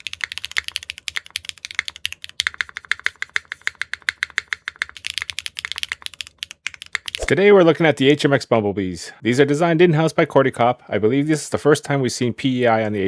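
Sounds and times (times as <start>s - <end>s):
fast mechanical keyboard typing: 0.0s - 7.2s.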